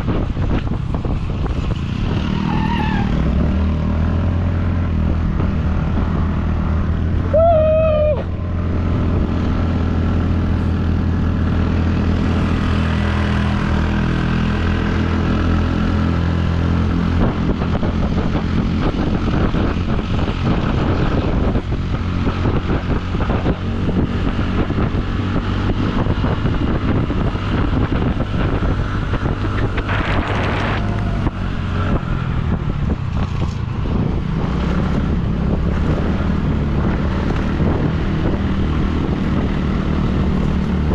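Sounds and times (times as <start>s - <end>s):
wind rushing over microphone: 0.0s - 40.9s
vehicle engine running: 16.4s - 40.9s.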